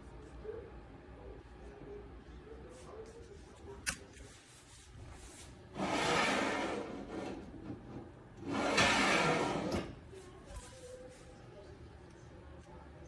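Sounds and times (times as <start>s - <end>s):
long rubbing scrapes: 4.6s - 7.4s.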